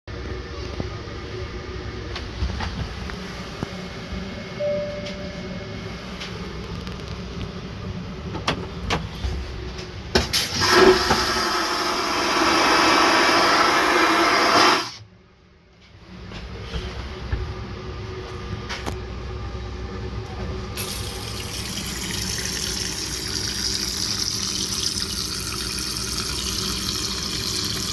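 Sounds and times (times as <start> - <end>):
cabin hum: 0.1 - 27.9
vacuum toilet flush suction: 10.3 - 15.0, 20.8 - 27.9.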